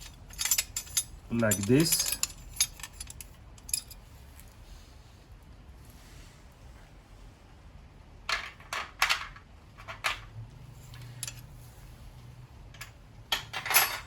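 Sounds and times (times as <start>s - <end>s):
metal parts clinking: 0.0s - 4.0s, 8.3s - 11.5s, 12.7s - 14.0s.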